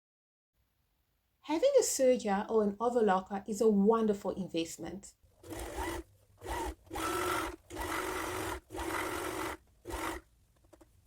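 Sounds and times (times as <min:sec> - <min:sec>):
serger stitching with motor hum: 0:05.4 - 0:10.9.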